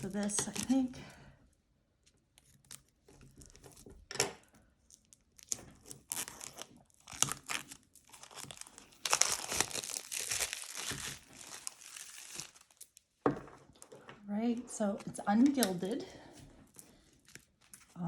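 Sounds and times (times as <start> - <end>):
plastic wrapping crinkling: 0.0 - 1.0, 4.8 - 14.2, 15.0 - 18.0.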